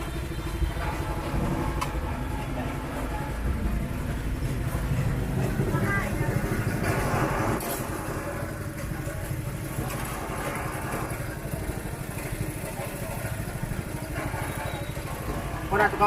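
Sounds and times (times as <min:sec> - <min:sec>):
motorbike engine running: 0:00.0 - 0:16.0
street noise: 0:00.0 - 0:16.0.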